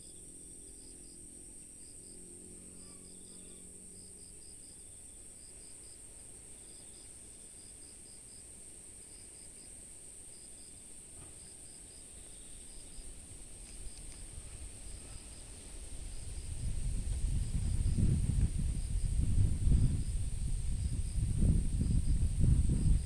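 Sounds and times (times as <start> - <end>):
high-pitched insect buzz: 0.0 - 9.7
cricket chirping: 0.0 - 23.0
low rumble: 14.1 - 23.0.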